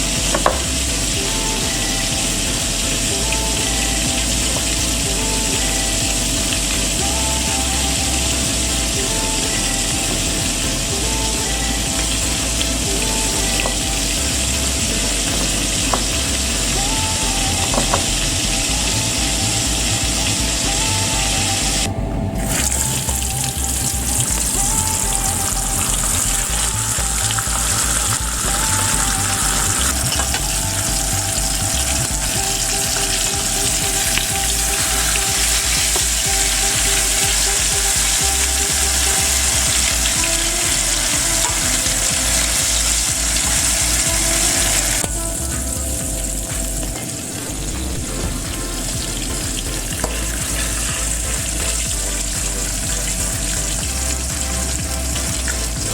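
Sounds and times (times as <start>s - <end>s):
fish sizzling in hot oil: 22.4s - 45.0s, 48.5s - 55.9s.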